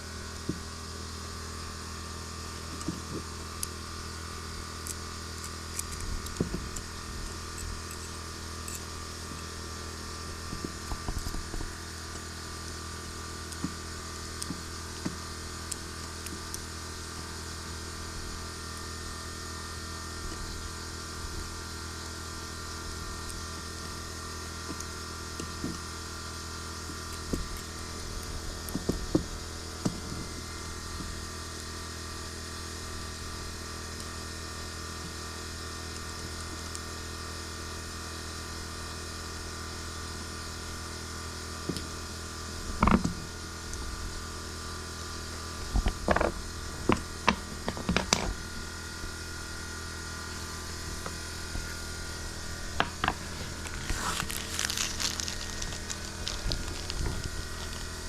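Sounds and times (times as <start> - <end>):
low mechanical hum: 0.0 - 58.0
small hard parts clicking: 52.8 - 58.0.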